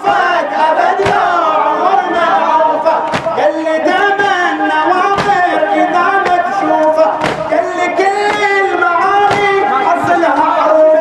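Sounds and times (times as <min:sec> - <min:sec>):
men chanting together: 0:00.0 - 0:11.0
chest-striking thumps: 0:05.2 - 0:05.6, 0:07.1 - 0:07.6.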